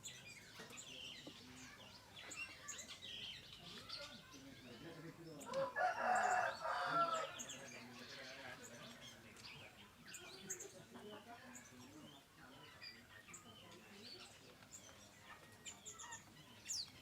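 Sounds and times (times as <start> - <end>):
small birds chirping: 0.0 - 17.0
rooster crowing: 5.5 - 7.3.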